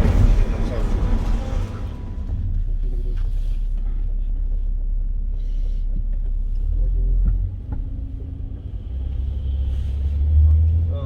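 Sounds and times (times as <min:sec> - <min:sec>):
low steady rumble: 0:00.0 - 0:11.0.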